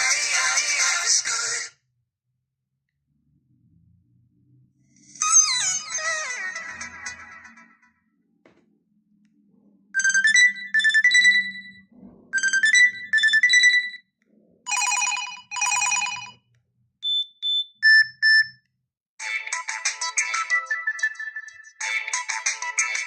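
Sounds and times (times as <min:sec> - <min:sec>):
short paired beeps: 0:10.0 - 0:11.8, 0:12.4 - 0:14.0, 0:17.0 - 0:18.6.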